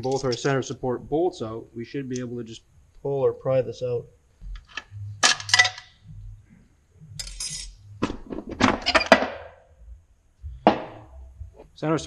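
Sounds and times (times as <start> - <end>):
metal clinking: 5.2 - 6.0, 7.1 - 8.0
metal scraping: 7.0 - 9.3
metal knocks: 10.5 - 11.6.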